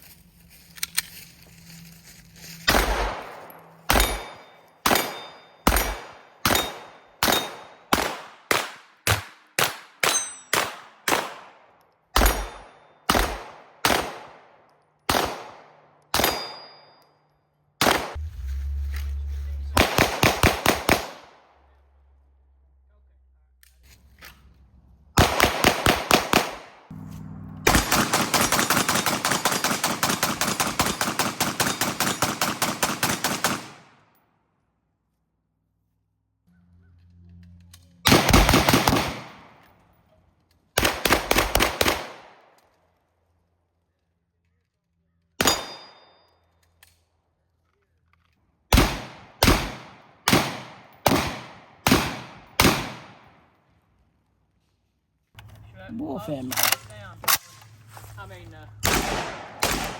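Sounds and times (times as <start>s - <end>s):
rapid gunshots: 3.9s - 11.5s, 19.8s - 21.3s, 25.2s - 26.9s, 27.7s - 33.8s, 38.1s - 39.5s, 40.8s - 42.3s, 58.8s - 59.9s.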